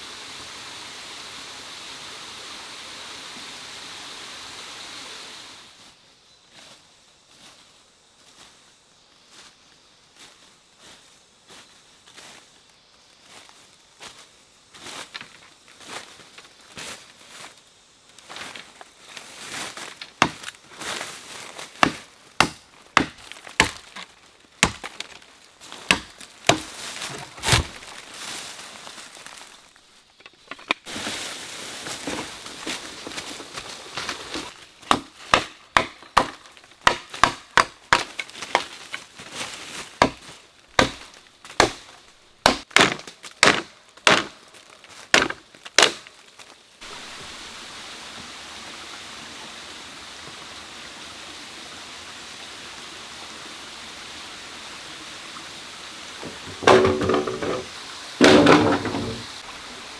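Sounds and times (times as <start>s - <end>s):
blade chopping wood: 20.2s - 20.6s, 21.8s - 25.2s, 25.8s - 28.0s, 34.0s - 39.0s, 40.0s - 44.4s, 45.1s - 46.1s, 56.2s - 59.4s
running water rushing: 46.8s - 59.9s.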